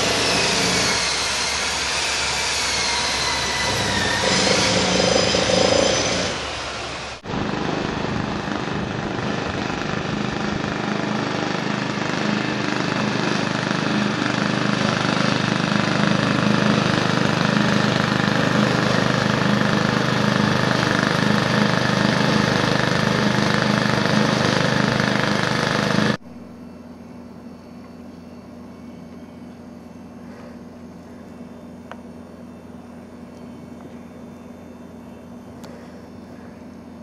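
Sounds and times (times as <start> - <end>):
engine running: 0.0 - 26.2.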